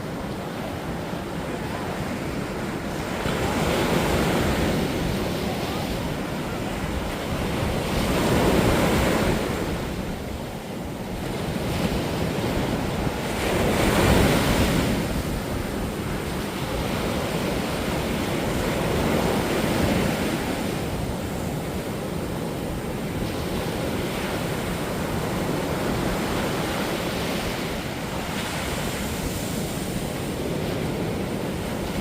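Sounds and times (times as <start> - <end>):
sea surf breaking on beach: 0.0 - 32.0.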